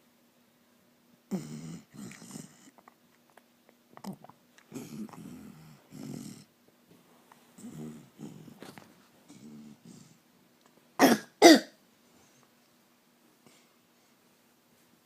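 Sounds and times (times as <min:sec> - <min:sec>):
soft snores: 0:01.3 - 0:02.8, 0:04.0 - 0:06.5, 0:07.6 - 0:10.2
loud coughs: 0:11.0 - 0:11.8.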